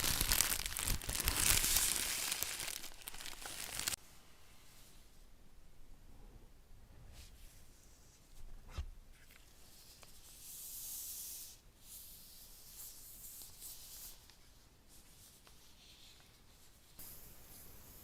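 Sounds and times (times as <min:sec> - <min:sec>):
packaging rustling: 0:00.0 - 0:04.0
sliding hiss: 0:17.0 - 0:18.0.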